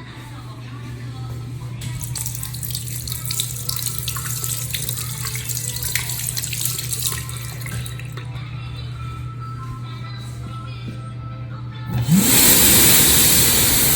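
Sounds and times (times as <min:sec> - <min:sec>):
tap water running into sink: 0:01.8 - 0:08.4, 0:12.0 - 0:13.9.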